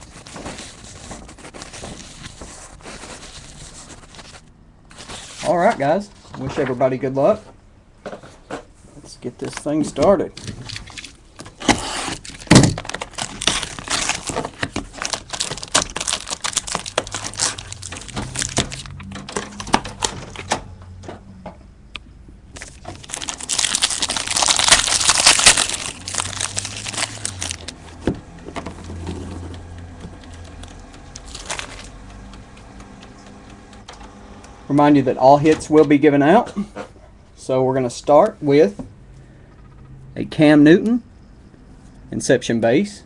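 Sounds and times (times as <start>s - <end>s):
plastic wrapping crinkling and tearing: 0.0s - 5.5s, 10.4s - 20.4s, 22.6s - 28.0s, 29.6s - 32.1s.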